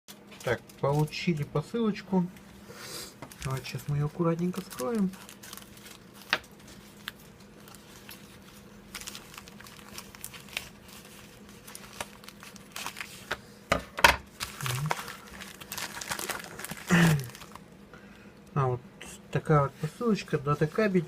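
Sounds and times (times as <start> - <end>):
wrapping paper tearing and crinkling: 0.2 - 1.7, 3.3 - 13.4, 14.3 - 17.6.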